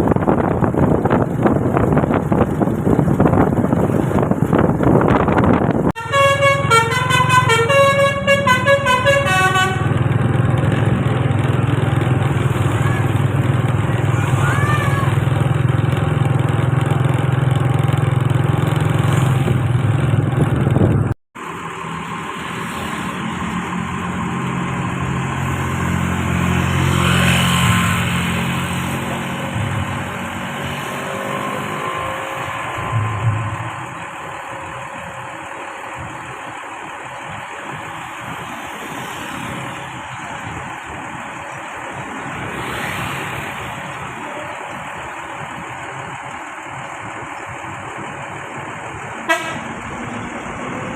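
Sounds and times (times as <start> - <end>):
bus engine running: 0.0 - 50.9
traffic noise: 0.0 - 50.9
bus musical horn tune: 6.0 - 10.3, 49.2 - 49.9.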